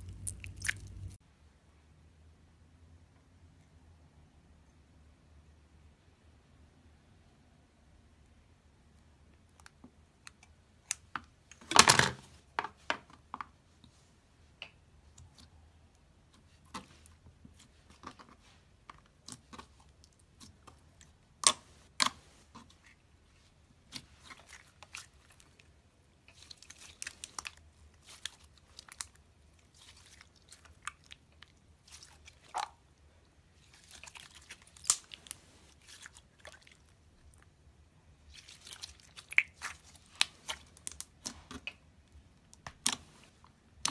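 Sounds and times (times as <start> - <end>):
slime crackling: 0.0 - 1.2, 33.6 - 37.4, 38.2 - 41.8
slime squeezed by hand: 38.3 - 41.6.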